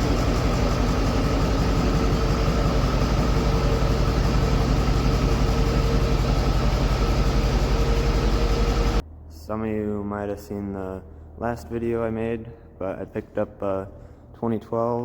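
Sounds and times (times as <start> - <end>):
diesel engine idling: 0.0 - 9.0.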